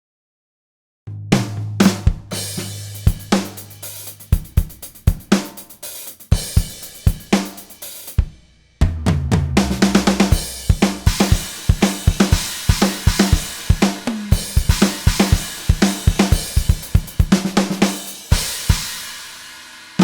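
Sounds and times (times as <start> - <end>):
bass drum: 1.1 - 18.9
snare drum: 1.4 - 20.0
cymbals: 1.8 - 8.2, 9.8 - 20.0
hi-hat: 2.4 - 8.2, 10.4 - 20.0.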